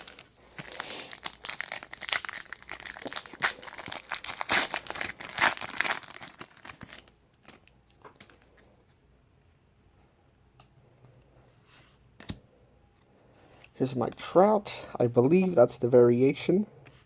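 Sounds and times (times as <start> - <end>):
plastic wrapper tearing and crumpling: 0.0 - 8.4.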